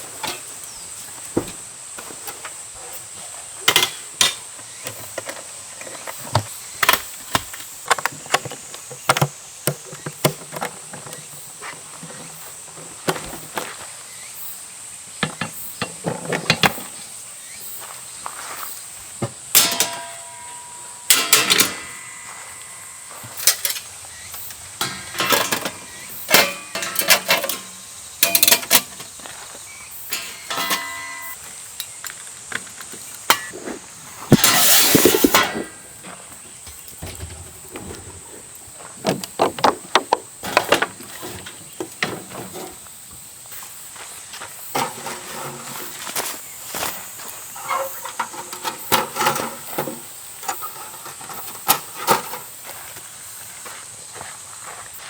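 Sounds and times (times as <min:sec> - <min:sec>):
camping gear knocks and clinks: 0:00.0 - 0:02.6, 0:03.6 - 0:13.8, 0:15.1 - 0:17.2, 0:19.1 - 0:33.6, 0:34.2 - 0:43.0, 0:44.0 - 0:53.0
high insect drone: 0:00.0 - 0:55.0
rustling scrape: 0:33.4 - 0:36.3, 0:44.7 - 0:49.8.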